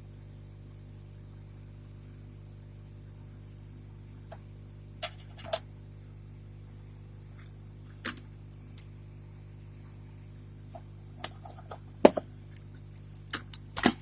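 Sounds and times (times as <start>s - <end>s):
steady low hum: 0.0s - 14.0s
hardware clicks and knocks: 11.2s - 14.0s.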